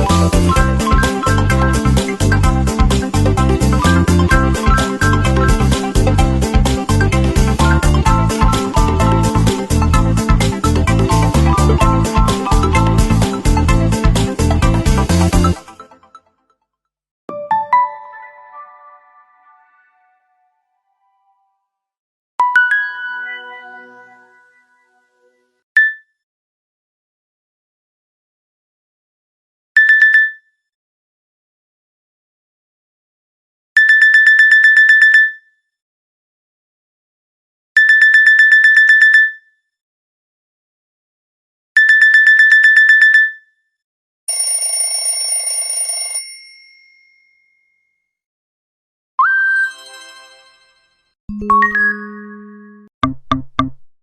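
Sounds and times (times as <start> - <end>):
phone alert tone ringing: 44.3 - 46.3, 51.3 - 52.9
high beeps: 51.3 - 52.9.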